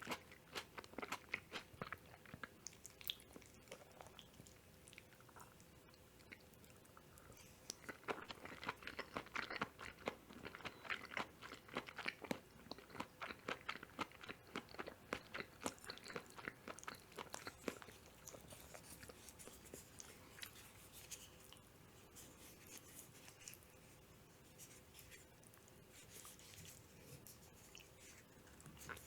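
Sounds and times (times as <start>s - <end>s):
close chewing mouth clicks: 7.2s - 19.2s.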